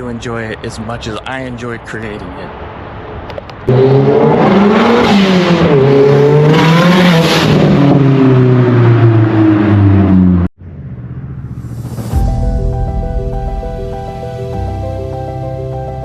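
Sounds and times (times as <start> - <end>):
car engine revving: 3.7 - 12.2.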